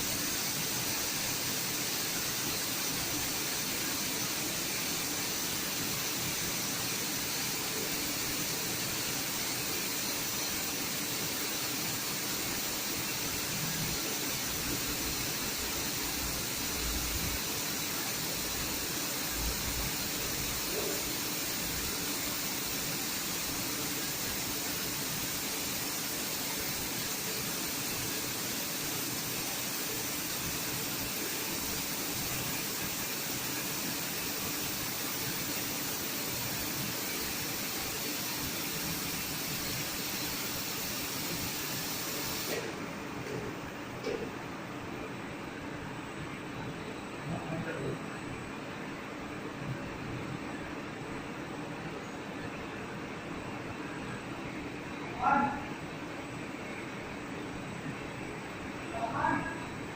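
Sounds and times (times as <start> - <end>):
spray paint air hiss: 0.0 - 44.2.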